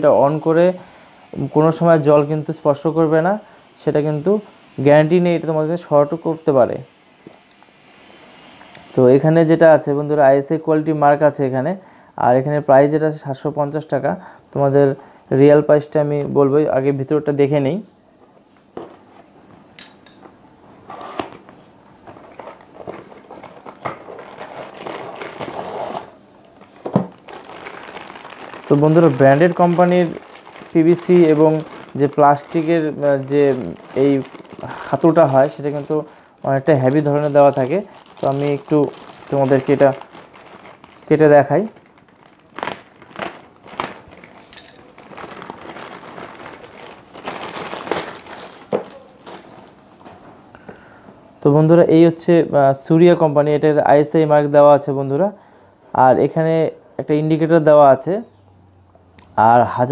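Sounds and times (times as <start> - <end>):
packaging rustling: 20.9 - 50.3.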